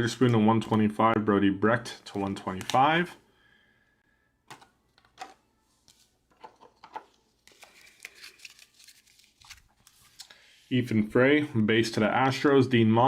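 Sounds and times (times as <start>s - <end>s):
trading cards shuffled: 2.0s - 2.9s, 4.5s - 10.6s.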